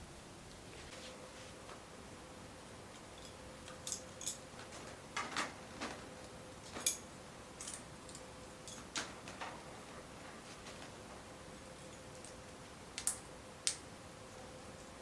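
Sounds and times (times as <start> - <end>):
faint steady hum: 0.0 - 15.0
metal poles clicking and tapping: 6.7 - 9.7.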